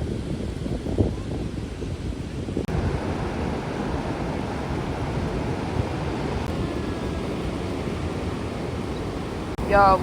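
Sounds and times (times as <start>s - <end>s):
wind buffeting microphone: 0.0s - 10.0s
ocean surf: 2.6s - 10.0s.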